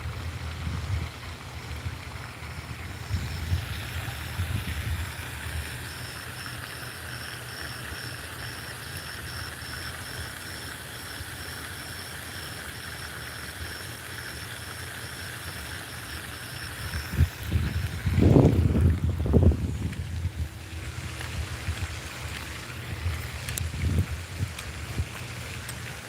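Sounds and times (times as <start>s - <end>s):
wind rumble on microphone: 0.0s - 5.9s, 16.8s - 25.6s.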